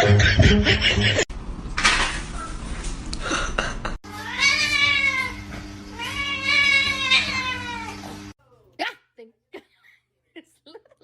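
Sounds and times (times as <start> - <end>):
cat meowing: 4.1 - 8.2.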